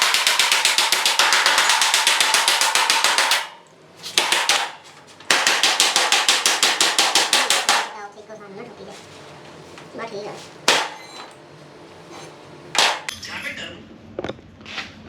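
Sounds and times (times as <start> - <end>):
impact tool hammering: 0.0 - 8.0, 10.6 - 11.4, 12.2 - 13.1.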